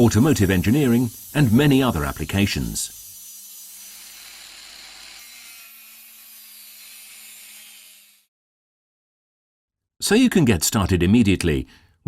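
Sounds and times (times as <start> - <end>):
angle grinder grinding: 0.0 - 8.3.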